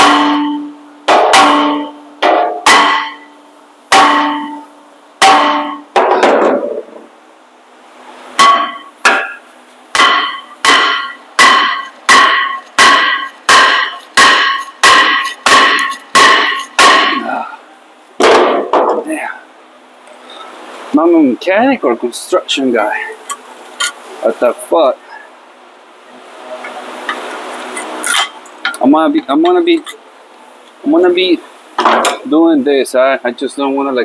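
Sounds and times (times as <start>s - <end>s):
hammer striking metal rotor: 0.0s - 6.9s, 8.4s - 17.4s.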